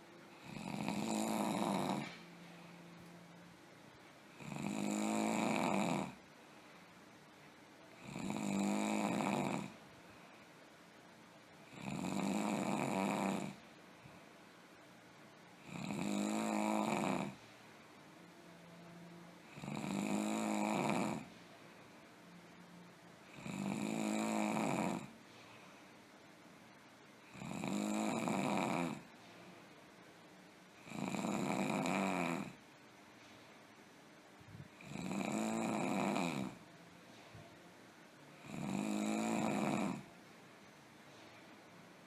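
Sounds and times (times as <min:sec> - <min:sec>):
quiet breathing: 0:00.0 - 0:03.5, 0:04.1 - 0:14.9, 0:15.6 - 0:42.0
person snoring heavily: 0:00.3 - 0:02.2, 0:04.3 - 0:06.2, 0:08.0 - 0:09.8, 0:11.7 - 0:13.6, 0:15.6 - 0:17.4, 0:19.5 - 0:21.3, 0:23.3 - 0:25.1, 0:27.3 - 0:29.0, 0:30.8 - 0:32.6, 0:34.8 - 0:36.6, 0:38.4 - 0:40.1.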